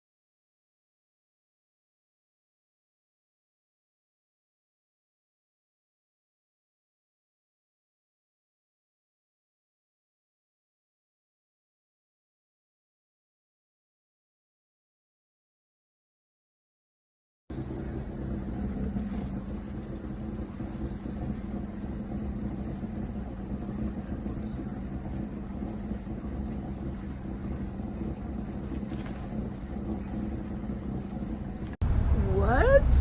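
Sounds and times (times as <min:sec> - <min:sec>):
low mechanical hum: 0:17.5 - 0:33.0.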